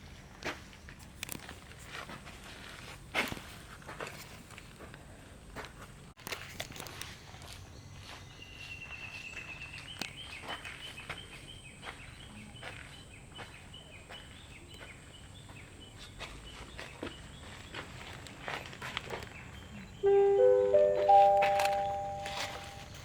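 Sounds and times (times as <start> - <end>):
footsteps crunching on garden path: 0.4 - 20.0
high thin pulsing call: 20.0 - 23.0.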